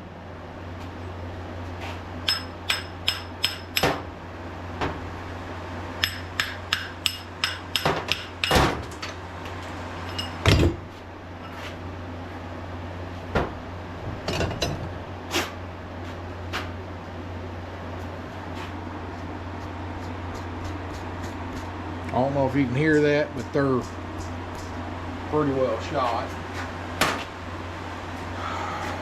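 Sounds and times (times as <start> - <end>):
steady low hum: 0.0 - 29.0
hammer striking metal punch: 2.2 - 4.0, 6.0 - 8.8.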